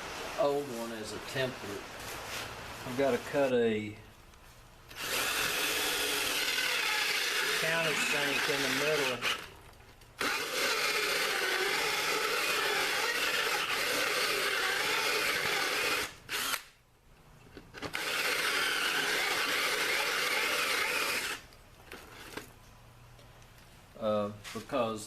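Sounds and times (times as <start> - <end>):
power drill boring into wood: 4.9 - 9.5, 10.2 - 16.7, 17.8 - 21.4.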